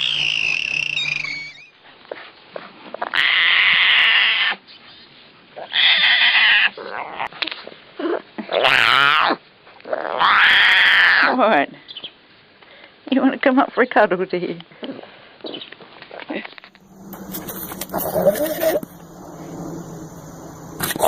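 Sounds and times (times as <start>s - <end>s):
animal calling loudly: 0.0s - 1.8s, 3.0s - 4.6s, 8.0s - 9.4s, 10.0s - 11.4s, 17.3s - 19.0s.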